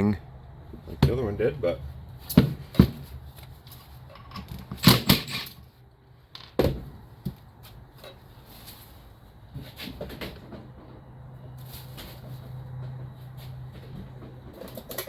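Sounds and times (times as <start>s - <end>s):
metal muffler clunks: 4.1s - 5.6s.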